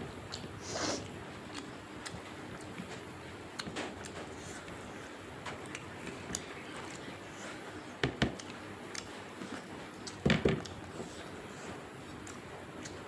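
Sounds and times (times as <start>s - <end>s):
chewing with wet mouth clicks: 1.5s - 2.9s, 8.4s - 10.8s, 12.1s - 13.0s.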